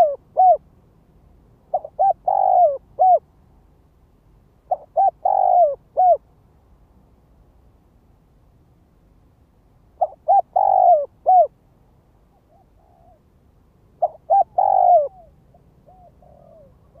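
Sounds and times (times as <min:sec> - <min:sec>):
dove cooing: 0:00.0 - 0:00.6, 0:01.7 - 0:03.2, 0:04.7 - 0:06.2, 0:10.0 - 0:11.5, 0:12.4 - 0:13.2, 0:14.0 - 0:17.0.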